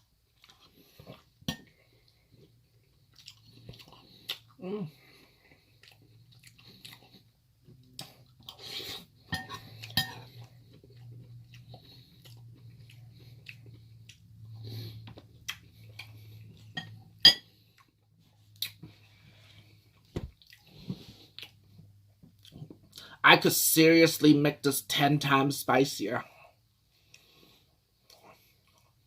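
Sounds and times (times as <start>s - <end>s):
quiet chewing: 0.2s - 16.8s, 17.6s - 23.1s, 26.9s - 29.0s
cutlery clinking on a dish: 9.3s - 10.3s.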